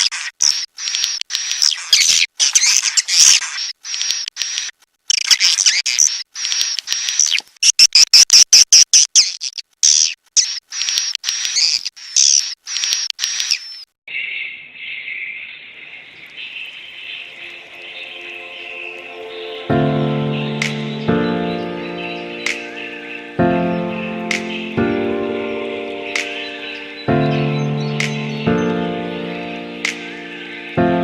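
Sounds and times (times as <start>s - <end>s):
low chirring: 16.6s - 31.0s.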